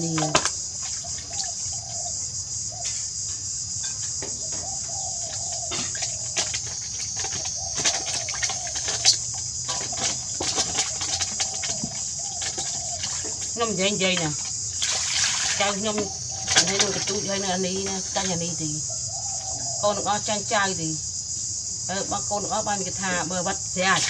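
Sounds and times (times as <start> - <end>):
faint animal calls: 0.0 - 3.0, 4.2 - 14.4.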